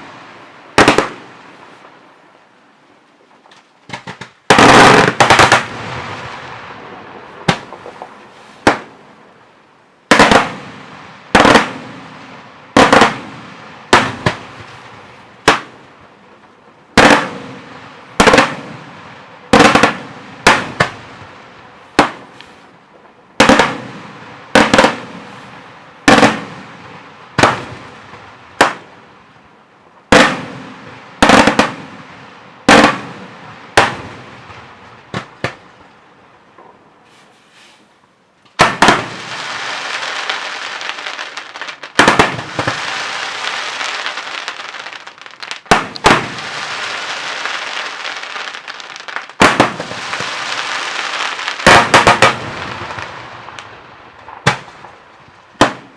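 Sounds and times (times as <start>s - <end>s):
fireworks bangs with echo: 0.0s - 1.6s, 3.9s - 9.2s, 10.1s - 16.0s, 16.9s - 29.1s, 30.1s - 36.0s, 38.6s - 55.9s.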